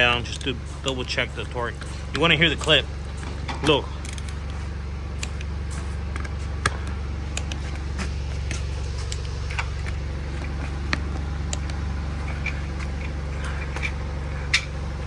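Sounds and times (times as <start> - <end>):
low machine hum: 0.0 - 15.0
torque wrench clicking: 4.0 - 4.6, 5.2 - 7.8.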